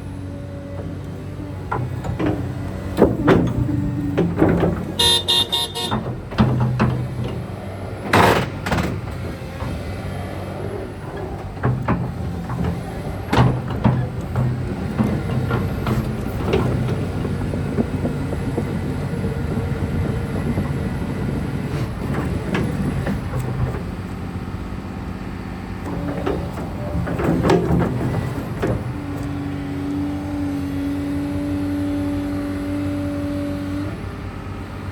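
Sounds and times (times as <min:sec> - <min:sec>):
excavator diesel engine running: 0:00.0 - 0:34.9
metal clanks and knocks: 0:01.6 - 0:24.2, 0:25.8 - 0:29.6.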